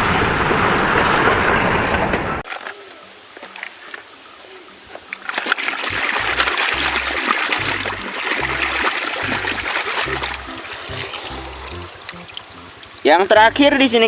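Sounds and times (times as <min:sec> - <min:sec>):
water splashing and running: 0:00.0 - 0:13.2
background music with bass line: 0:05.9 - 0:12.8.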